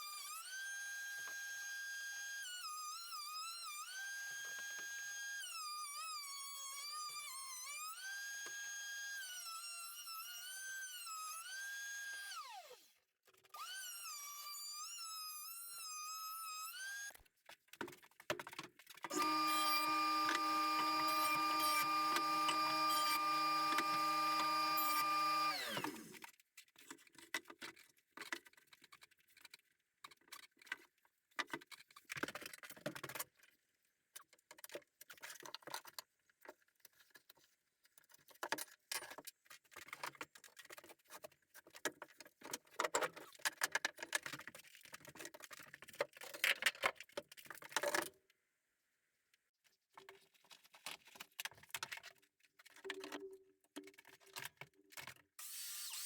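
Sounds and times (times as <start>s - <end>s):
power tool motor running: 0.0s - 12.9s, 13.6s - 17.2s, 19.1s - 26.2s, 55.4s - 56.0s.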